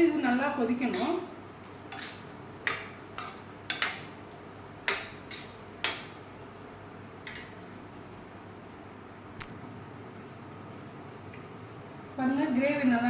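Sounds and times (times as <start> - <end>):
metal spoon scraping cooking pot: 0.9 - 1.3.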